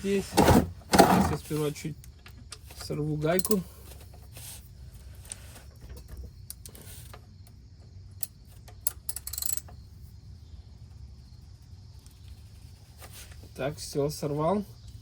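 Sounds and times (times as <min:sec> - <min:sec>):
wrench clinking on drain plug: 0:03.4 - 0:03.6.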